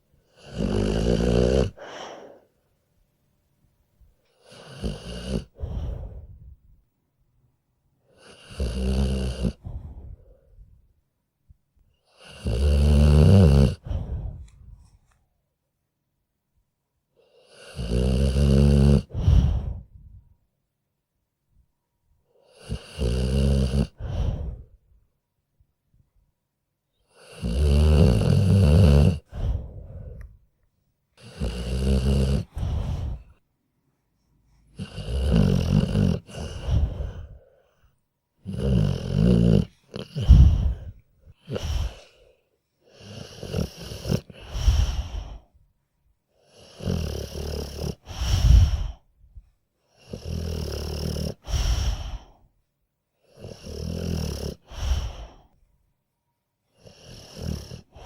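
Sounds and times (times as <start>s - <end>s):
dog snoring: 0.3s - 2.4s, 4.3s - 6.5s, 8.1s - 10.4s, 12.0s - 14.6s, 17.2s - 19.9s, 22.4s - 24.8s, 27.0s - 30.4s, 31.2s - 33.4s, 34.6s - 37.8s, 38.4s - 45.5s, 46.4s - 49.1s, 49.9s - 52.4s, 53.2s - 55.5s, 56.7s - 58.0s.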